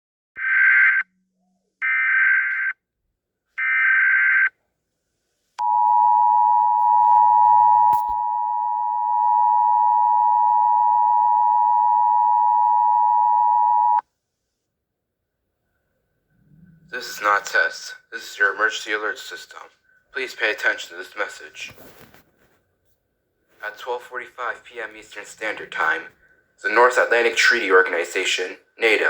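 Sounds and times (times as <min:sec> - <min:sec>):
two-tone attention signal: 0:05.6 - 0:14.0.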